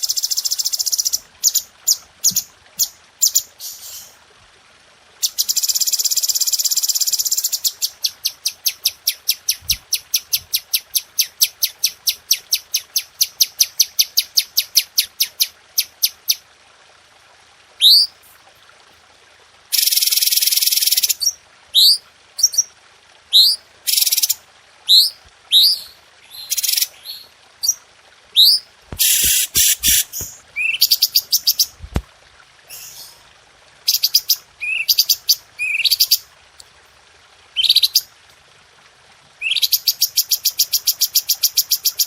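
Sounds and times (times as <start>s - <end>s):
songbird singing trills: 28.4s - 31.7s, 33.9s - 36.2s.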